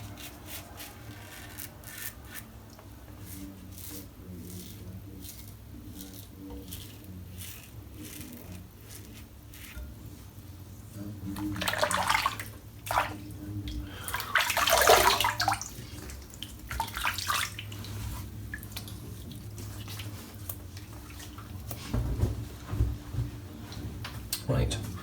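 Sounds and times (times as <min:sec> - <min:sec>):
water splashing in a sink: 0:11.2 - 0:21.9.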